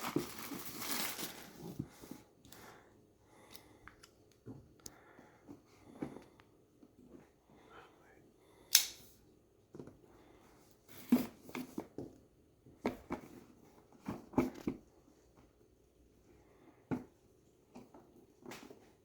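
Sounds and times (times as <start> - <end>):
packaging rustling and clicking: 0.0 - 2.0.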